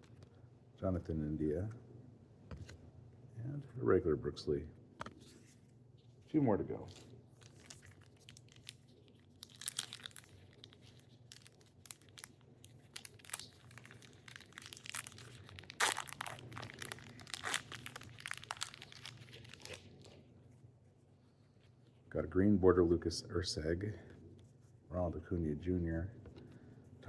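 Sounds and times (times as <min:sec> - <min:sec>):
foil wrapper tearing and crinkling: 0:07.0 - 0:20.2.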